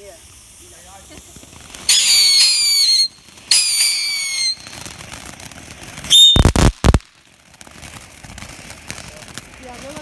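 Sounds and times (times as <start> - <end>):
whistling fireworks: 0.0 - 10.0
very loud firework bang: 6.1 - 7.0.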